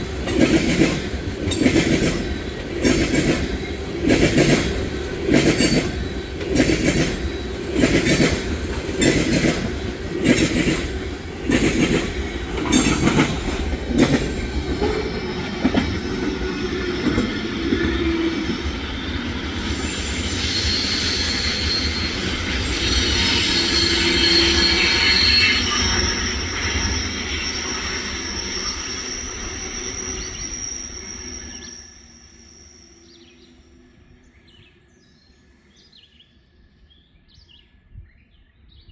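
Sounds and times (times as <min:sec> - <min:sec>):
train wheels clicking over rail joints: 0:00.0 - 0:24.6
rolling train rumble: 0:00.0 - 0:35.3
high-pitched wheel squeal: 0:10.3 - 0:32.8.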